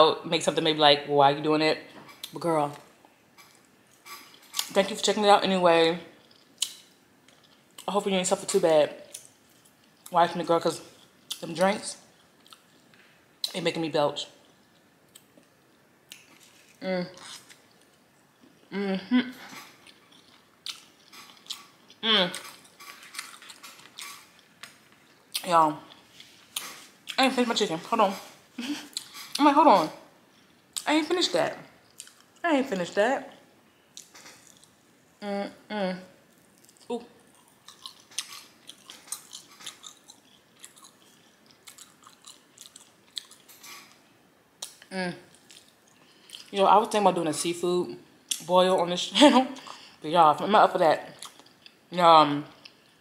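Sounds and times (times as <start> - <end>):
chewing and lip smacking: 12.2 - 13.6, 19.5 - 27.2, 28.9 - 29.4, 31.8 - 32.4, 33.9 - 34.8, 36.3 - 44.0, 44.6 - 46.6, 51.1 - 51.8
person humming: 16.8 - 17.2, 18.7 - 19.5, 35.2 - 36.1.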